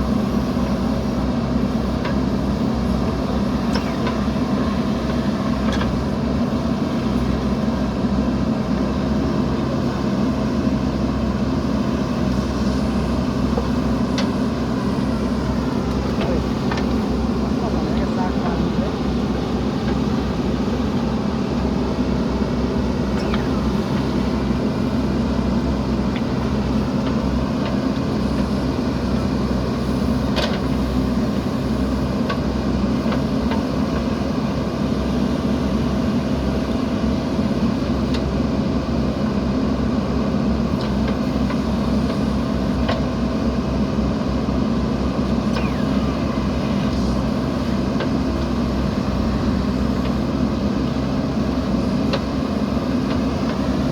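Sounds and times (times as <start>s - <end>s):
diesel engine under load: 0.0s - 53.9s.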